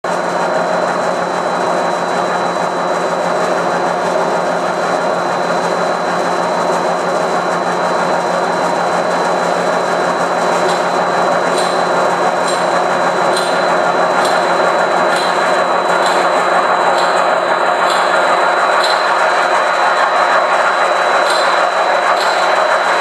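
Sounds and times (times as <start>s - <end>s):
lathe machining noise: 0.1s - 23.0s.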